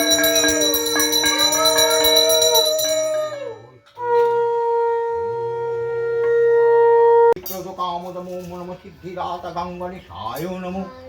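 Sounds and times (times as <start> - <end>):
conch shell blasts: 0.0 - 5.2.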